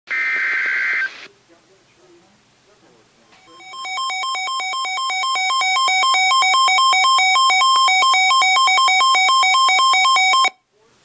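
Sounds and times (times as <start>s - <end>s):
electronic two-tone beeping alarm: 3.4s - 10.6s.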